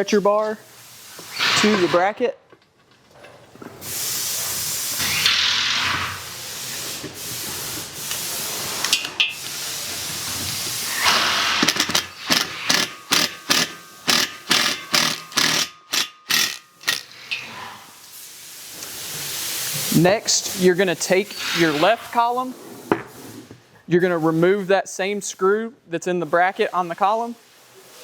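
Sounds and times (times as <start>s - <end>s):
impact driver driving a screw: 10.8s - 17.2s.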